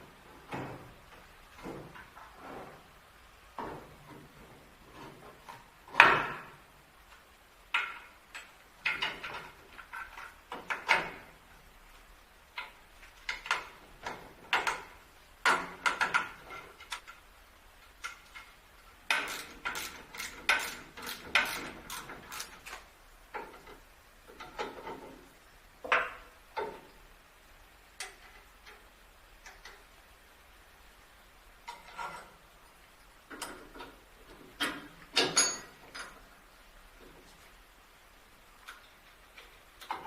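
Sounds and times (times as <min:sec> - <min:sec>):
hard objects clicking and knocking: 0:07.7 - 0:11.3, 0:12.5 - 0:17.2, 0:17.9 - 0:26.9.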